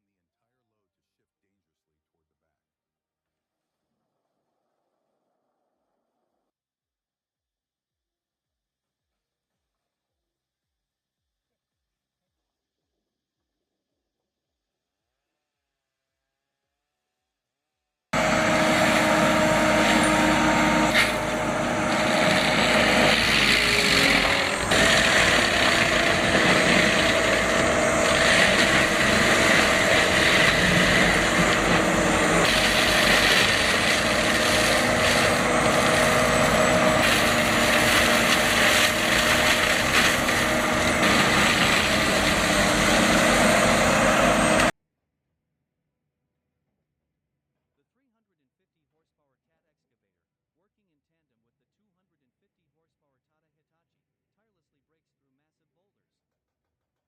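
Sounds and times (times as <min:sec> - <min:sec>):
machine engine running under load: 0:18.2 - 0:44.7.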